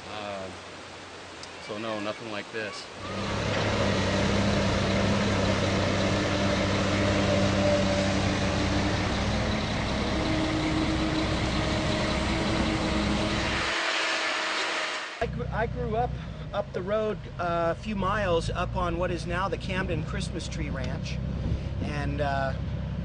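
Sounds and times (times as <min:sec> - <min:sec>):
dense steady hiss: 0:00.0 - 0:22.6
heavy truck engine running: 0:03.0 - 0:17.4.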